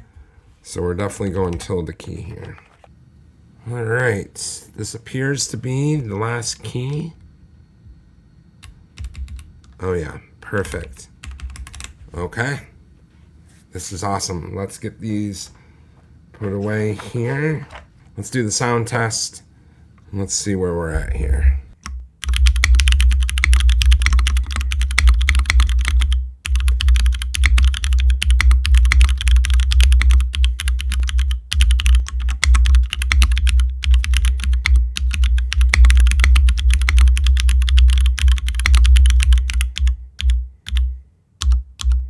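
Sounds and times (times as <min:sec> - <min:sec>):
mechanical keyboard typing: 0:08.6 - 0:09.5, 0:11.2 - 0:12.0, 0:21.8 - 0:42.0.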